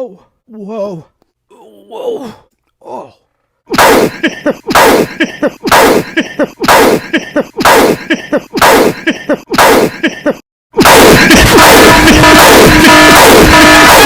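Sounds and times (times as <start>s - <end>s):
man coughing and gasping: 3.8s - 13.0s
loud distorted electronic music: 10.8s - 14.0s.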